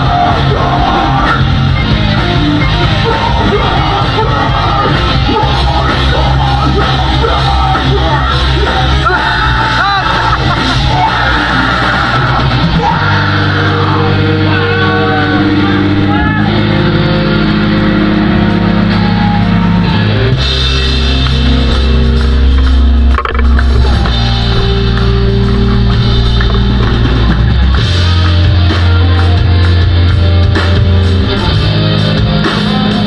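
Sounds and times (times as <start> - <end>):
shouted vocals: 0.0 - 20.3
live metal band playing: 0.0 - 33.0.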